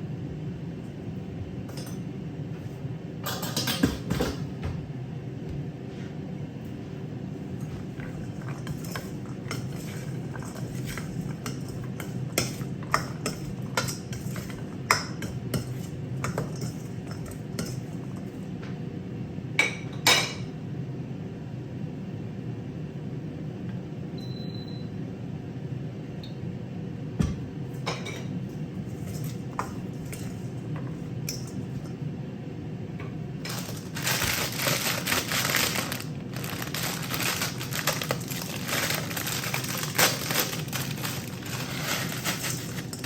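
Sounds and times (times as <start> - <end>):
steady low hum: 0.0 - 43.0
dishes and utensils clinking: 1.7 - 2.1, 3.2 - 4.5, 27.8 - 28.4, 33.5 - 43.0.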